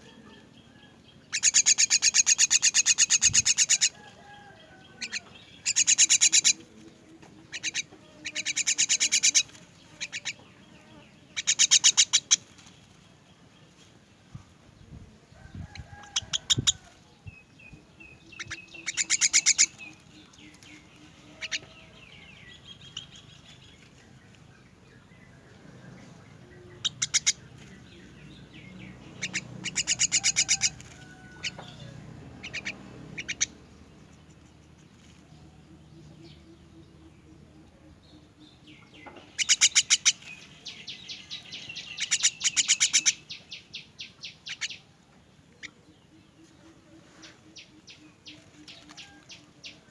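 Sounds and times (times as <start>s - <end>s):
young birds harsh begging calls: 1.3s - 12.6s, 18.2s - 23.4s, 26.4s - 33.8s, 39.2s - 43.5s.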